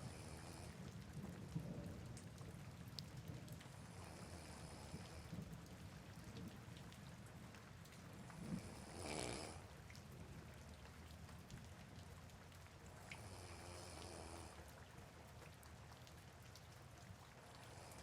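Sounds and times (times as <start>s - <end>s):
soft rain: 0.0s - 18.0s
person snoring: 8.8s - 9.6s.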